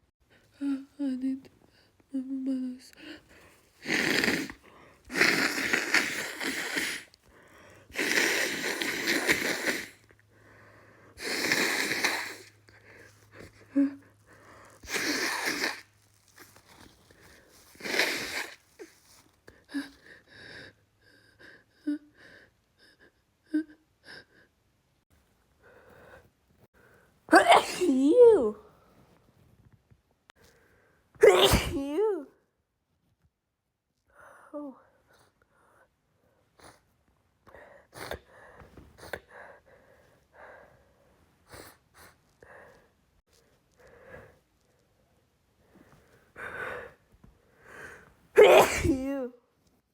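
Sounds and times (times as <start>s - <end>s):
woman sneezing: 14.8s - 15.9s, 27.3s - 28.6s, 31.2s - 32.3s, 48.3s - 49.4s.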